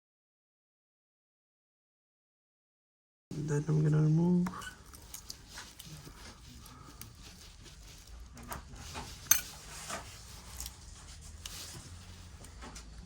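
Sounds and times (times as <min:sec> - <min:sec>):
hand tools clicking and scraping: 0:04.5 - 0:13.0.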